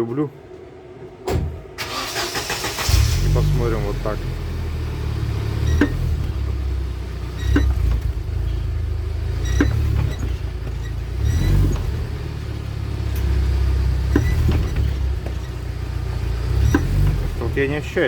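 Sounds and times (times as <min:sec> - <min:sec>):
drivetrain low rumble: 0:00.0 - 0:18.0
sharp axle knock: 0:14.1 - 0:15.4, 0:16.6 - 0:17.3.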